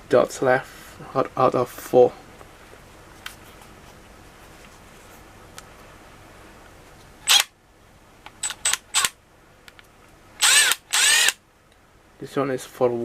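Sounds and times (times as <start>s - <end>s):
impact driver whirring: 7.3s - 7.5s, 8.4s - 9.2s, 10.4s - 11.4s.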